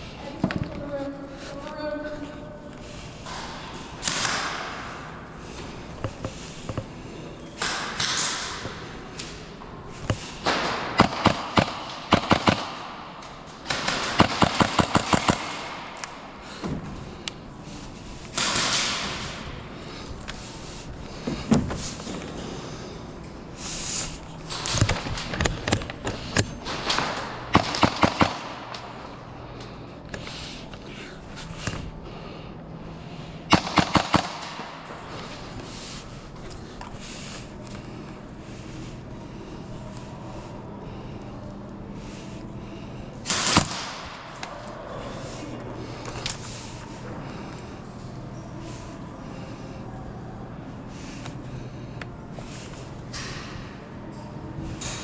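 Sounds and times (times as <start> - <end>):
airsoft guns firing: 10.4 - 16.1, 26.6 - 29.1, 33.5 - 35.0, 43.3 - 44.4.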